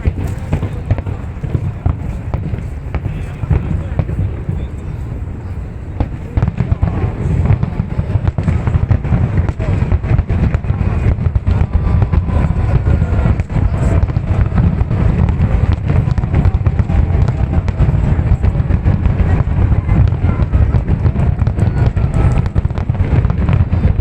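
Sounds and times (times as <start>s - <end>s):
fireworks booms and crackles: 0.0s - 24.0s.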